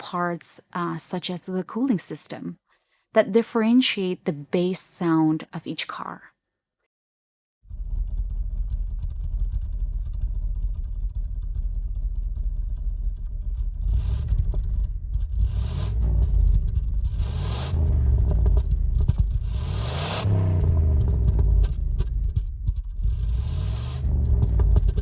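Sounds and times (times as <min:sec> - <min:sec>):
car engine idling and revving: 0:07.7 - 0:25.0.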